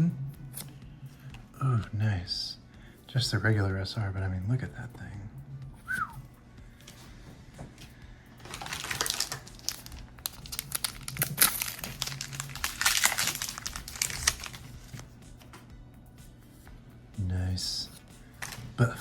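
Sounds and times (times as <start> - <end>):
foil wrapper crinkling: 8.4 - 15.1, 18.4 - 18.7.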